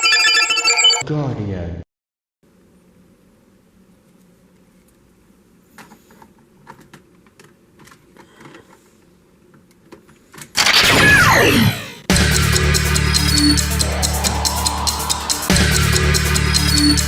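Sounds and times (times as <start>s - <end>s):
loud downward sweeping burst: 10.6s - 17.0s.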